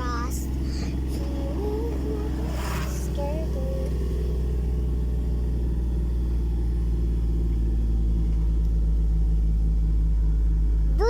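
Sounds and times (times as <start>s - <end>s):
vehicle engine and road noise: 0.0s - 11.0s.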